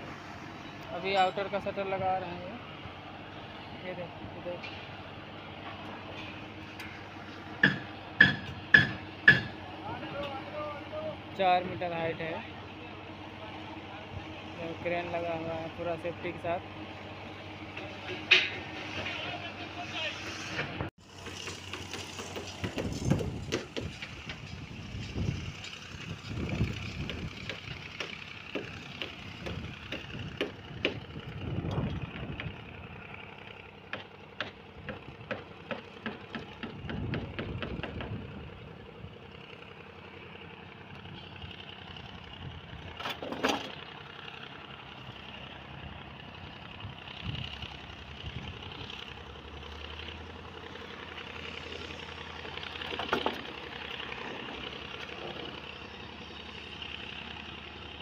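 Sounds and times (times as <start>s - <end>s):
crane engine running: 0.0s - 58.0s
low engine hum: 0.0s - 58.0s
sharp metallic knocks: 7.6s - 9.6s, 21.2s - 24.4s.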